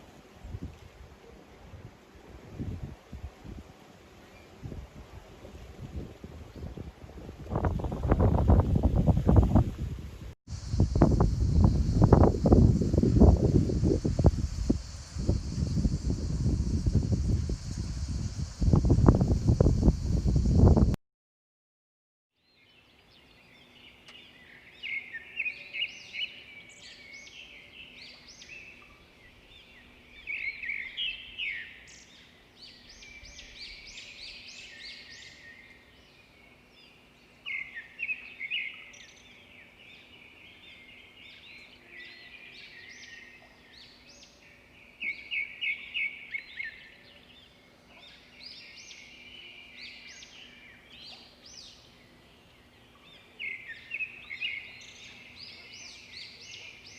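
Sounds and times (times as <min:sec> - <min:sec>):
birds chirping and singing: 0:22.5 - 0:56.9.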